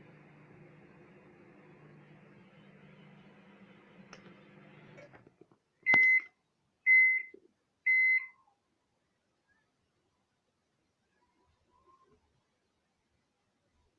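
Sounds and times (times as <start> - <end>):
microwave oven humming: 0.0 - 5.3.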